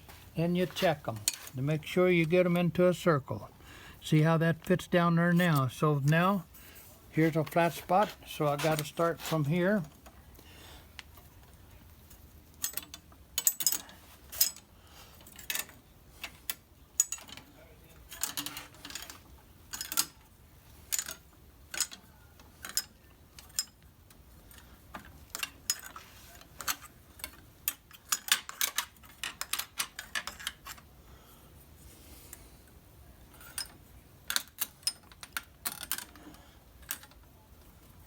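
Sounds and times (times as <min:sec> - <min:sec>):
metallic clicks and clinks: 0:12.1 - 0:20.3, 0:20.9 - 0:30.9, 0:33.3 - 0:38.0.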